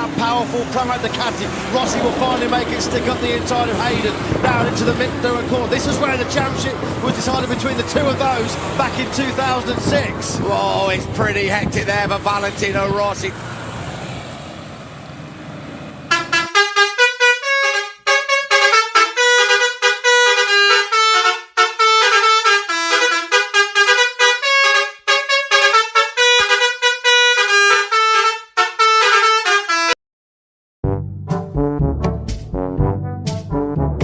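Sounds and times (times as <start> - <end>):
multi-tone bus air horn tune: 0.0 - 10.1, 16.1 - 30.0.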